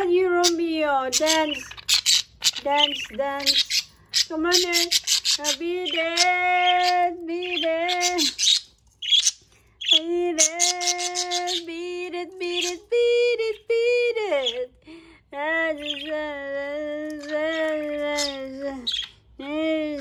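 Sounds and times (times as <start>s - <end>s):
budgerigars chirping: 0.3s - 12.8s, 15.8s - 16.2s, 17.2s - 19.3s.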